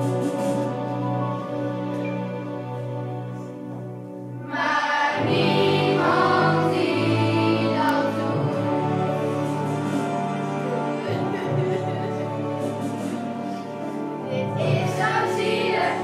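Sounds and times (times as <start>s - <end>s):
instrumental accompaniment: 0.0s - 16.0s
children's choir singing: 4.4s - 10.1s, 14.2s - 16.0s.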